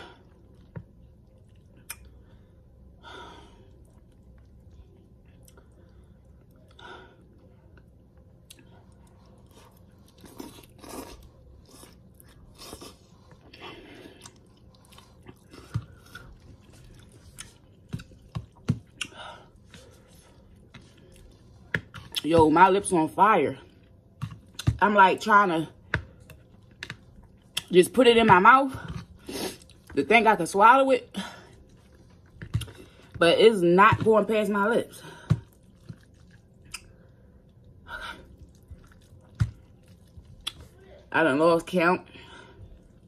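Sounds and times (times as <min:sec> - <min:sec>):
chewing noodles: 0:03.7 - 0:22.2, 0:31.5 - 0:33.2, 0:35.4 - 0:40.8.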